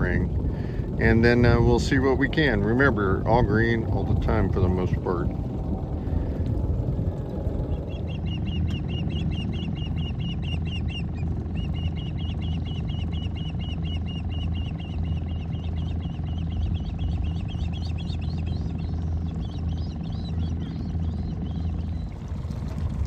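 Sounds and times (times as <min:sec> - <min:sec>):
boat motor running: 0:00.0 - 0:23.0.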